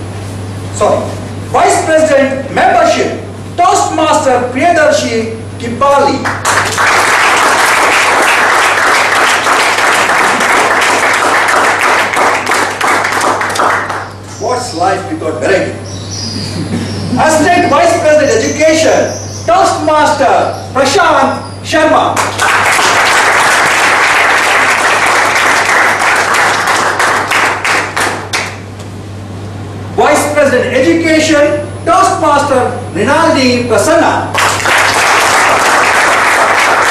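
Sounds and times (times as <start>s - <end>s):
audience applauding: 6.2s - 14.2s, 22.2s - 28.6s, 34.4s - 36.9s.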